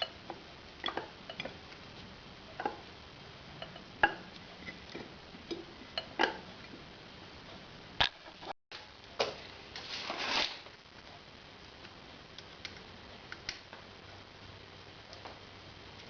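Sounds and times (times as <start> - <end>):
scraping rustle: 9.8 - 10.7.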